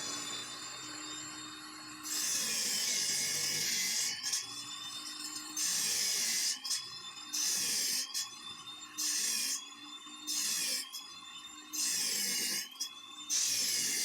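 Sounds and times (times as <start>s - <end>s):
thin whine: 0.0s - 2.2s
power tool whirring and grinding: 0.0s - 6.6s.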